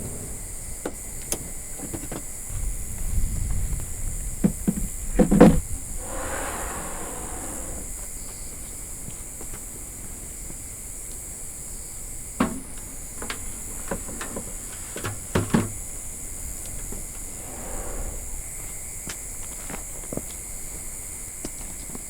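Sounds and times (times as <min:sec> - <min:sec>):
wind rumble on microphone: 0:02.4 - 0:08.3
steady high hiss: 0:05.6 - 0:21.6.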